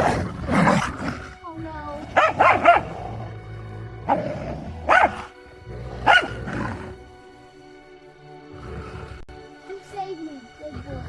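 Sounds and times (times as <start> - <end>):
music with long held tones: 0.0 - 11.0
dog barking: 2.1 - 3.3, 4.1 - 5.4, 6.0 - 6.8.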